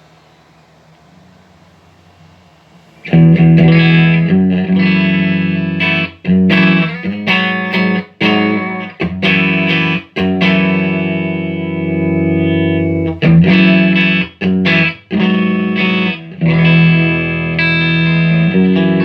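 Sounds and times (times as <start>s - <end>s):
electric guitar chords: 3.0s - 19.0s.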